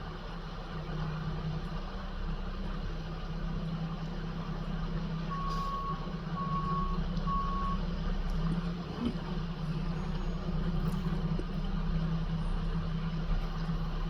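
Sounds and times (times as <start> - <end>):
diesel truck engine running: 0.0 - 14.0
backup alarm beeps: 5.3 - 7.8.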